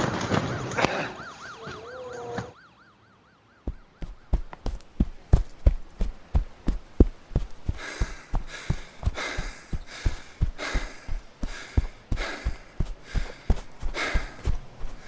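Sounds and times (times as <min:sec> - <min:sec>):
running footsteps: 0:03.7 - 0:15.0
loud panting breaths: 0:06.7 - 0:15.0.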